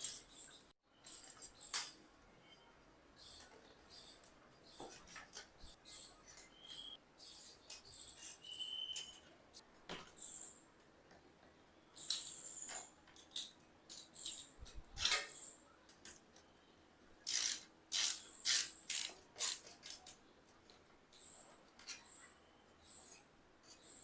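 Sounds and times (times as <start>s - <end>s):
metallic clicks and rattles of tools: 17.2s - 20.2s.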